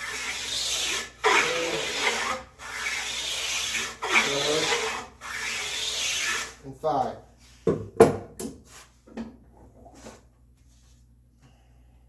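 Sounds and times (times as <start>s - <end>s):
hand plane shaving wood: 0.0s - 6.6s.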